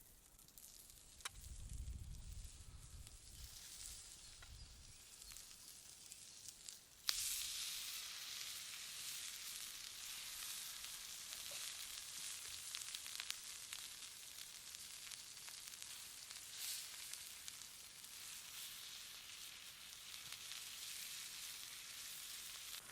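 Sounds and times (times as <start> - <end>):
steak sizzling on a hot stone: 0.0 - 22.9.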